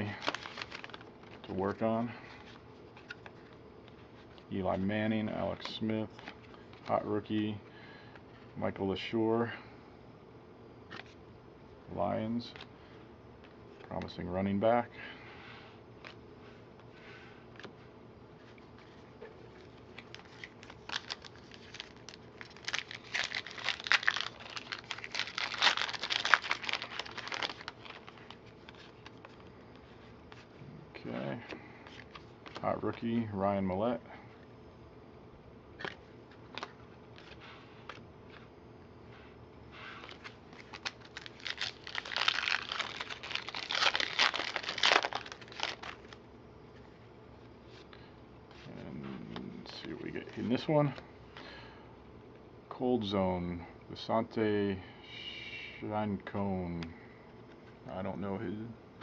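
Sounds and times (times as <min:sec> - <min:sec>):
plastic wrapper crinkling: 0:00.0 - 0:01.5, 0:19.6 - 0:29.5, 0:40.0 - 0:46.2.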